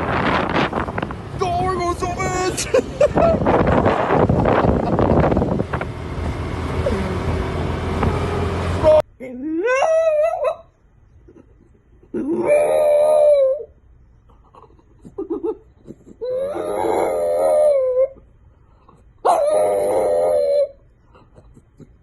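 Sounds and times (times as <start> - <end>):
dog howling: 12.3 - 13.7, 16.2 - 18.2, 19.2 - 20.8.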